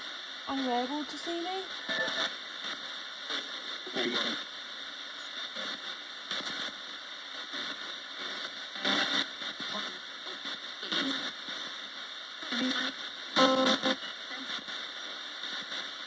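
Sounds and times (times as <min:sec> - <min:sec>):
radio static hiss: 0:00.0 - 0:16.0
brief blips of broadcast sound: 0:01.8 - 0:02.3.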